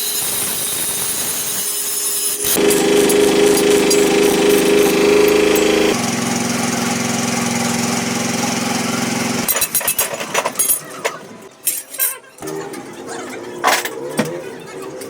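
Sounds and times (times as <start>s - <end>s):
machine humming: 2.4s - 9.5s.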